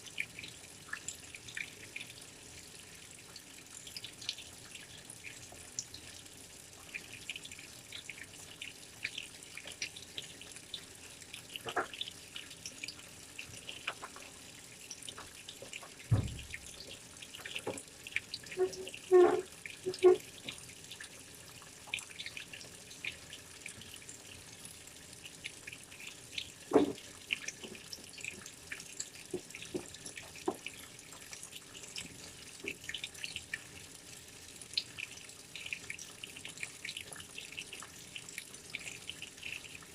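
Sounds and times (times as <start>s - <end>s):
water splashing in washing machine: 6.9s - 33.6s
washing machine knocks: 16.1s - 16.6s.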